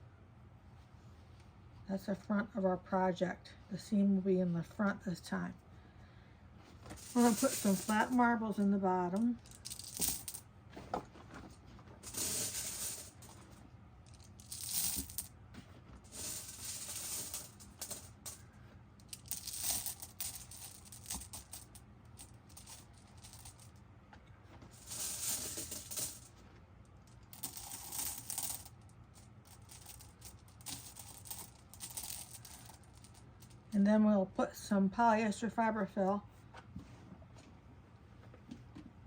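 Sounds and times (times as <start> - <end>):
glass marbles clinking into sack: 7.0 - 8.3, 12.0 - 13.3, 14.4 - 15.2.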